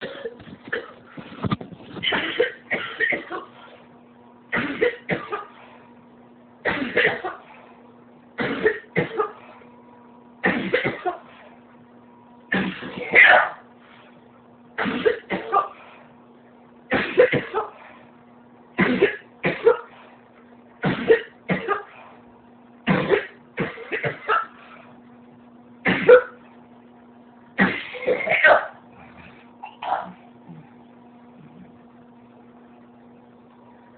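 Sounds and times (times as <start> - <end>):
woman coughing: 0.0 - 1.0, 2.0 - 3.6, 4.5 - 5.6, 6.6 - 7.5, 8.4 - 9.5, 10.4 - 11.3, 12.5 - 13.6, 14.8 - 15.8, 16.9 - 17.9, 18.8 - 20.0, 20.8 - 22.0, 22.9 - 24.6, 25.9 - 26.4, 27.6 - 28.8, 29.6 - 30.2
faint steady hum: 0.0 - 33.9.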